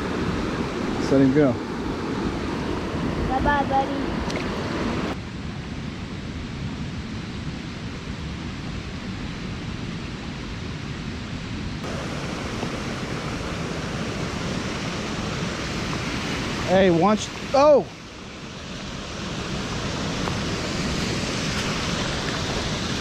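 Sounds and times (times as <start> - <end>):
creek water rushing: 0.0 - 5.2, 11.8 - 23.0.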